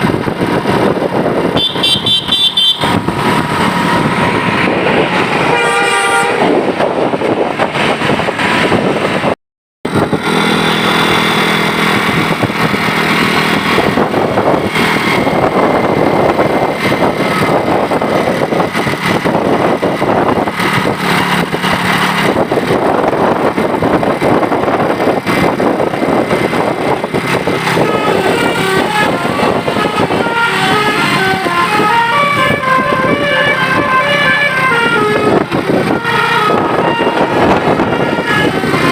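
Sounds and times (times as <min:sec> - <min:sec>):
loud vehicle noise: 0:00.0 - 0:38.9
bus musical horn: 0:01.5 - 0:03.1, 0:03.9 - 0:07.1, 0:26.1 - 0:38.9.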